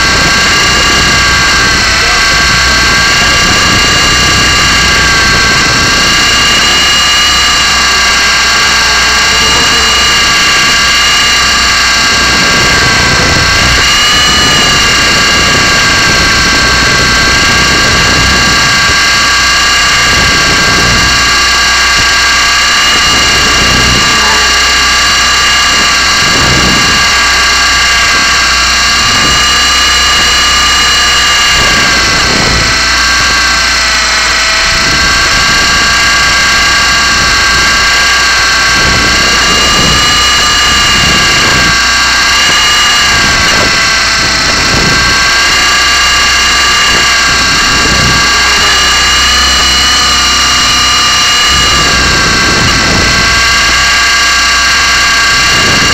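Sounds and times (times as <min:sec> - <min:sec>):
low rumble: 0:00.0 - 0:55.9
toy helicopter motor whining: 0:00.0 - 0:55.9.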